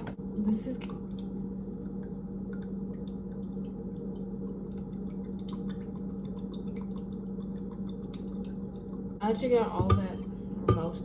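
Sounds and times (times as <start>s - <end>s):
low hum: 0.0s - 11.0s
milk dripping from can: 0.8s - 9.0s.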